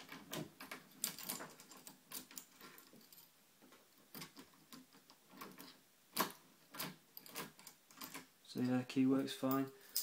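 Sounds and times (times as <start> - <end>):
key clicking and rattling in lock: 0.0 - 3.1, 4.2 - 8.3.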